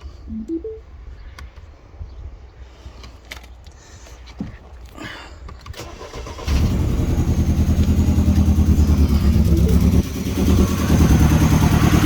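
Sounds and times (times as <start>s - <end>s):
car engine misfiring idle: 5.8s - 12.0s.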